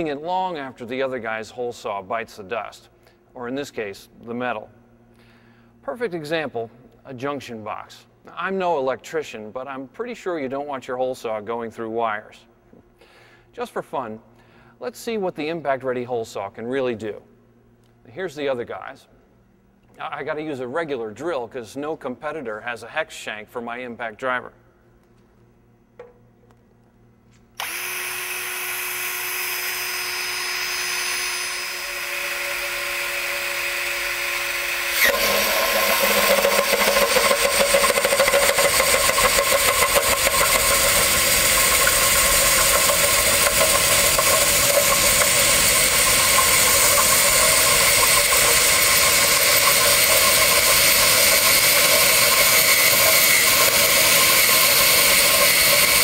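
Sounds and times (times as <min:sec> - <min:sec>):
drill spinning hole saw: 0:27.6 - 0:56.0
hole saw grinding metal: 0:27.6 - 0:56.0.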